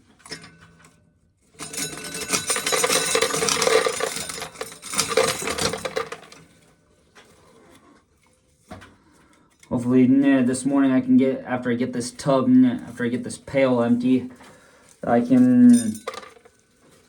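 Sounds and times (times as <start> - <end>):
corn kernels pouring and rattling: 2.3 - 6.4.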